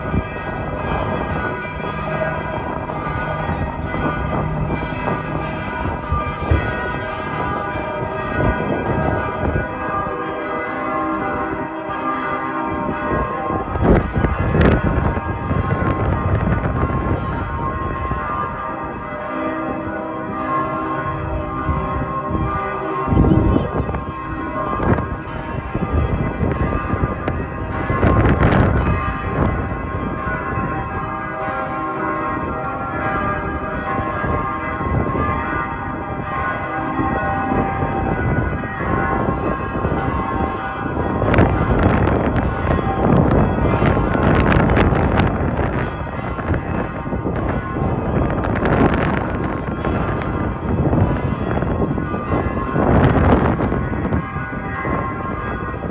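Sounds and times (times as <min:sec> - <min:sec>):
church bells pealing: 0:00.0 - 0:55.9.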